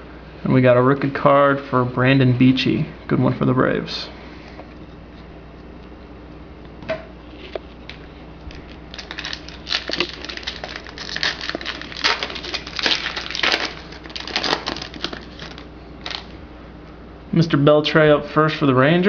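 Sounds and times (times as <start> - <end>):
wrapper crinkling and tearing: 7.3 - 16.4.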